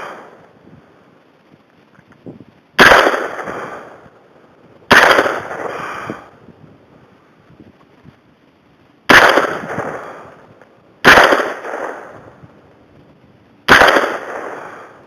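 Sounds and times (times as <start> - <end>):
rifle shots with echo: 0.0 - 0.4, 2.8 - 4.1, 4.9 - 6.3, 9.1 - 12.4, 13.7 - 15.0.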